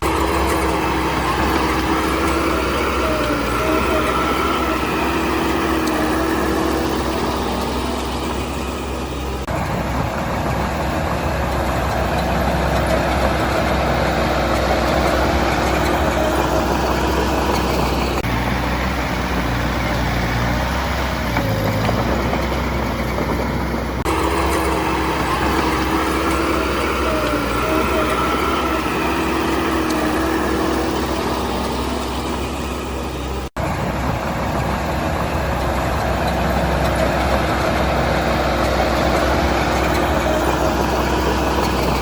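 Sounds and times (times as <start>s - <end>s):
diesel engine running: 0.0s - 42.0s.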